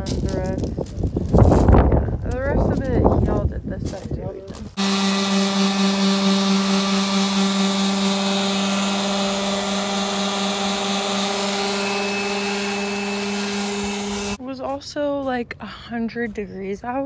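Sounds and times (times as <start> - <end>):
power sander buzzing: 4.8 - 14.4.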